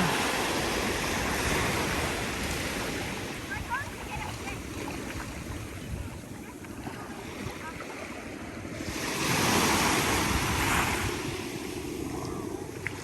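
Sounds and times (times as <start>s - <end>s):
ocean surf washing: 0.0s - 13.0s
wave breaking and rushing in: 8.2s - 12.9s.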